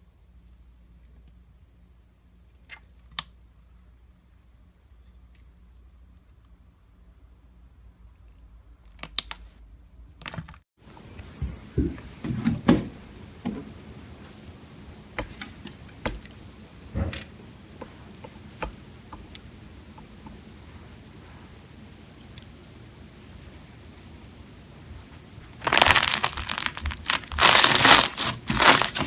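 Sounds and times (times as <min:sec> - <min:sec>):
hands squishing slime: 0:25.6 - 0:29.0.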